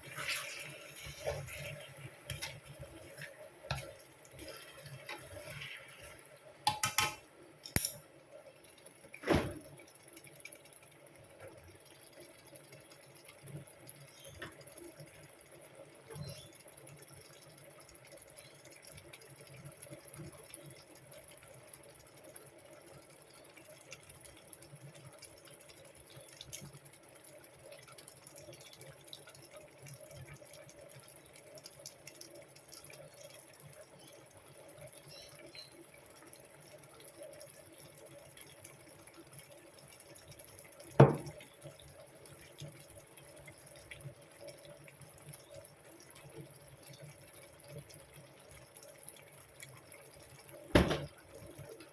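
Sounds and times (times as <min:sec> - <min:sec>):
water running from tap: 0:00.0 - 0:08.0.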